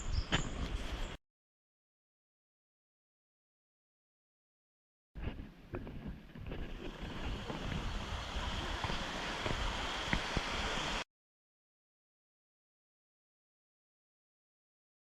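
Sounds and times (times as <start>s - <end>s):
wind buffeting microphone: 6.9s - 10.7s
waterfall rushing: 6.9s - 11.0s.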